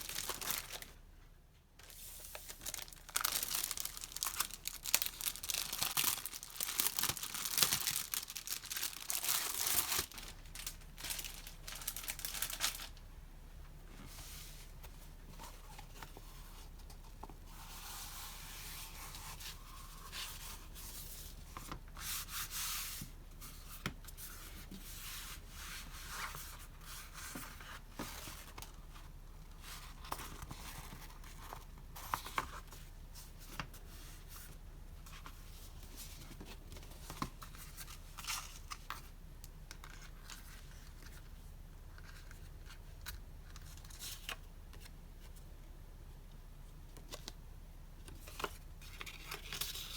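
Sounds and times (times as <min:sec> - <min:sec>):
paper and packaging rustling: 0:00.0 - 0:01.0, 0:01.8 - 0:13.0.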